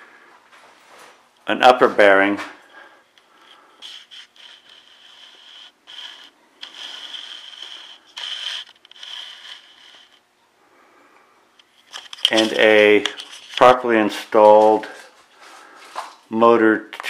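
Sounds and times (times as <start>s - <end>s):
mechanism scraping and rubbing: 3.4s - 10.3s, 11.7s - 13.9s.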